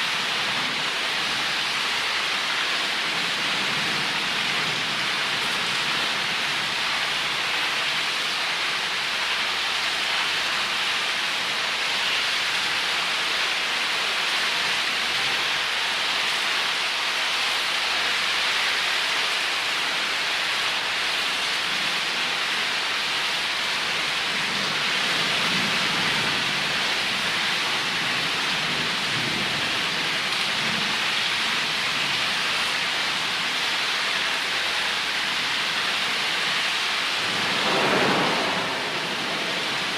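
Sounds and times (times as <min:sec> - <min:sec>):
heavy rain: 0:00.0 - 0:39.9
thunder rumbling: 0:37.1 - 0:39.9.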